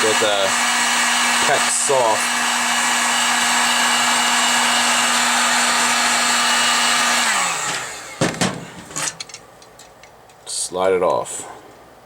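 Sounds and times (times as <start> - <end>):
heat gun blowing: 0.0 - 9.2
fan motor winding down: 0.0 - 9.4
sharp clicks and knocks: 7.6 - 10.4.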